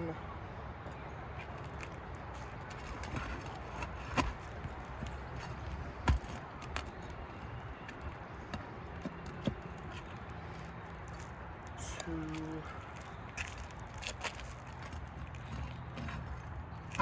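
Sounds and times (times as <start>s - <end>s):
nail pried out with hand tool: 2.8s - 5.4s.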